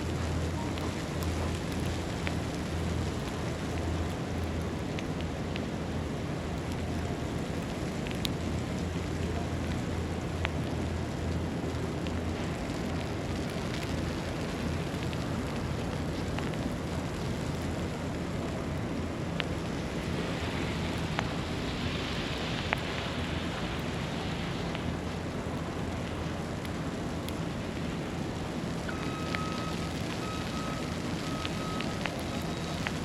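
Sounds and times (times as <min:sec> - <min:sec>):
low city rumble: 0:00.0 - 0:33.0
light ticks: 0:00.2 - 0:05.7, 0:06.6 - 0:09.8, 0:28.8 - 0:33.0.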